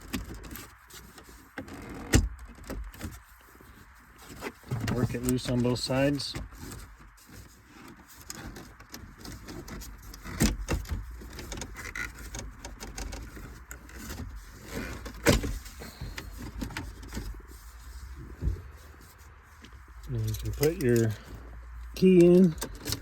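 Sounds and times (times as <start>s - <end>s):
plastic trim clicking and rubbing: 7.8s - 17.3s, 22.0s - 23.0s.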